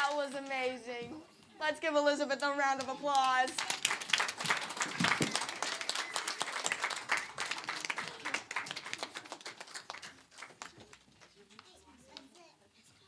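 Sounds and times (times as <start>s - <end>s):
audience applauding: 2.8s - 11.4s.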